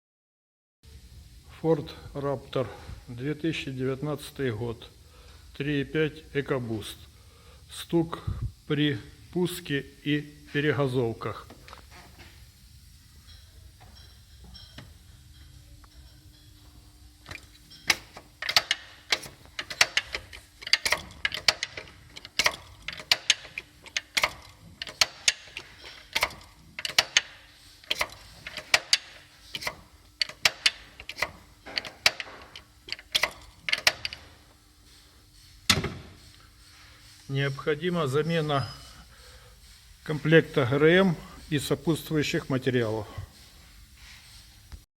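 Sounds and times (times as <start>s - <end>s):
engine knocking clicks: 17.9s - 27.3s.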